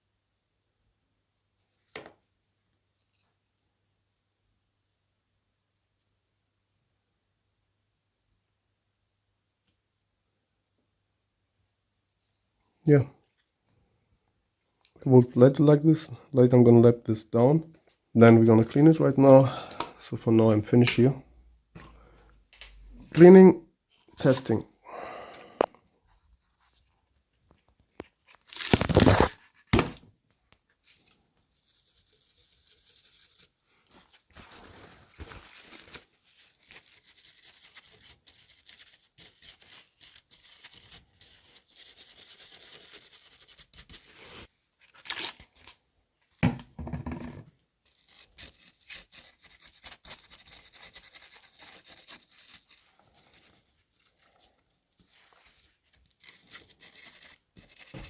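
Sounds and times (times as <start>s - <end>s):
scrubbing on circuit board: 47.9s - 52.9s, 56.2s - 58.0s.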